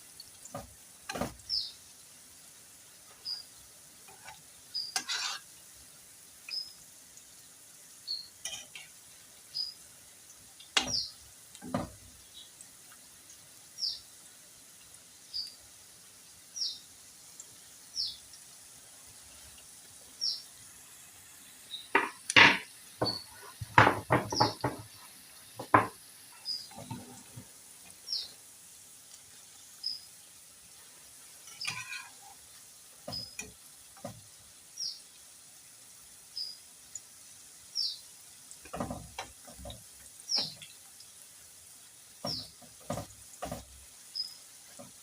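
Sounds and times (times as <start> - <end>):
faint sizzling: 0.0 - 45.0
spatula scraping frying pan: 4.0 - 5.6, 8.4 - 9.0, 23.0 - 25.0, 31.4 - 32.4
bird chirping: 23.0 - 23.4, 26.4 - 27.1.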